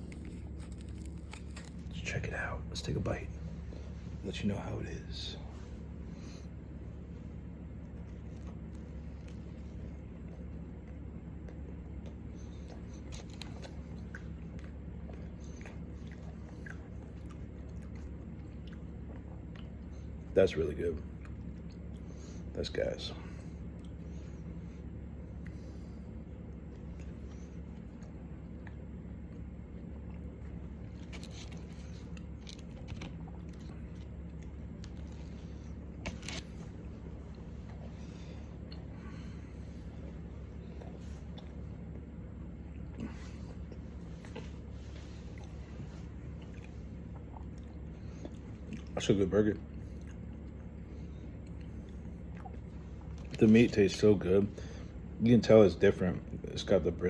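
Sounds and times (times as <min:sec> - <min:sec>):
person chewing food: 0:00.0 - 0:01.9, 0:05.8 - 0:20.3, 0:23.6 - 0:49.0, 0:49.6 - 0:53.4
steady low hum: 0:00.0 - 0:57.0.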